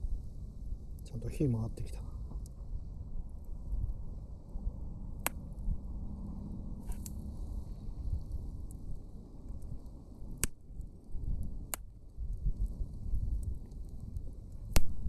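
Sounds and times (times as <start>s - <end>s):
campfire rumbling: 0.0s - 15.0s
wood crackling pops: 5.2s - 5.4s, 6.8s - 7.2s, 9.5s - 15.0s.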